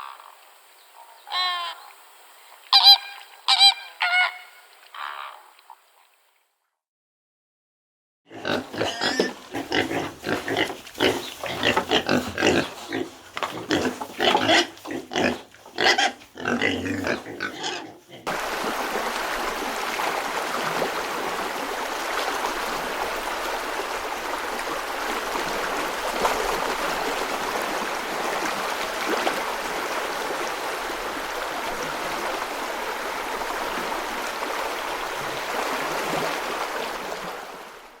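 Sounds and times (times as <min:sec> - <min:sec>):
faint water splashes: 0:08.4 - 0:38.0
running water rushing: 0:08.6 - 0:38.0.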